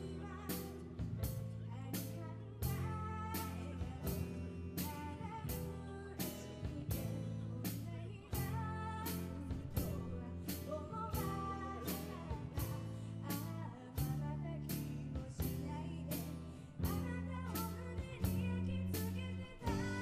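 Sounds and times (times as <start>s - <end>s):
drum kit beat: 0.0s - 20.0s
person singing: 0.0s - 20.0s.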